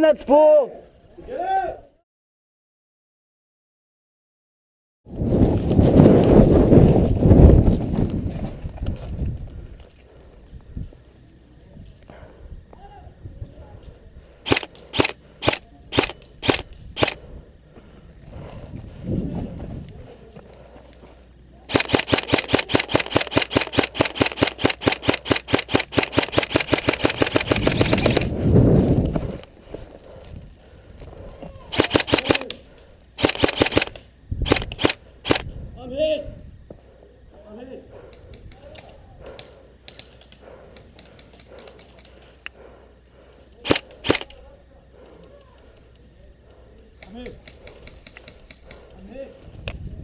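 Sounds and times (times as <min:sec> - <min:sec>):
airsoft gun firing: 0:14.4 - 0:17.2, 0:21.7 - 0:28.3, 0:31.7 - 0:32.6, 0:33.2 - 0:35.5, 0:43.6 - 0:44.4.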